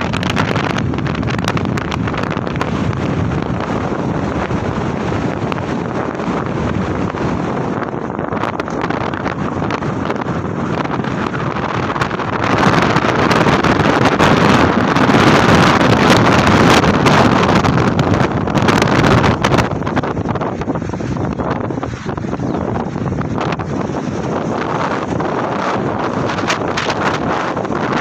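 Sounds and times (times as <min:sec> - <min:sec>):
wind buffeting microphone: 0:00.0 - 0:28.0.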